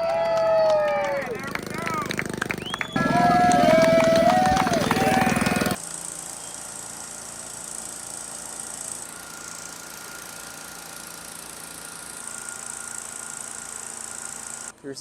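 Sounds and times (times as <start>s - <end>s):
low engine hum: 1.1s - 5.8s
high insect buzz: 5.8s - 14.7s.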